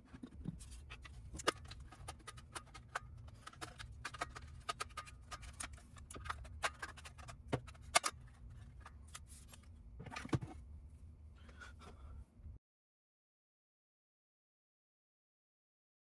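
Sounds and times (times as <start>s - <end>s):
small parts clicking and tapping: 0.0s - 9.6s.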